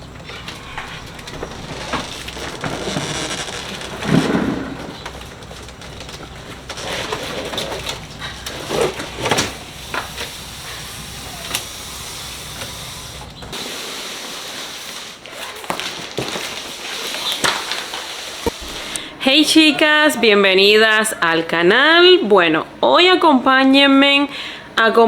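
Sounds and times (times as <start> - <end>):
low hum: 0.0 - 13.6
steady hiss: 0.0 - 15.6, 16.2 - 19.4.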